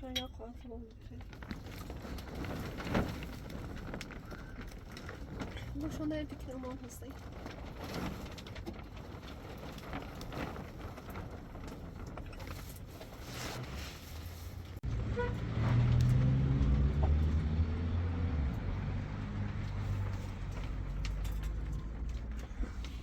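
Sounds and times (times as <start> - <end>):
faint rustles: 1.0 - 14.8, 19.5 - 23.0
vehicle engine rumbling: 1.1 - 23.0.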